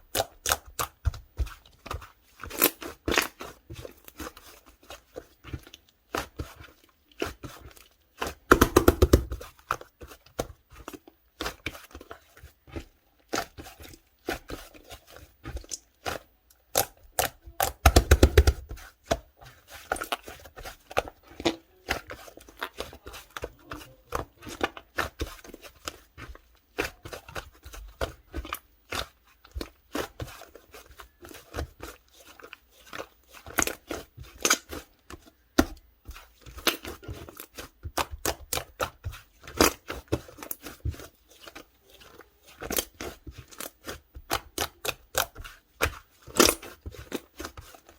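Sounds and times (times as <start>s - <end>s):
slime crackling: 0.0s - 47.9s
slime clicking and popping: 8.5s - 9.4s, 16.7s - 18.7s.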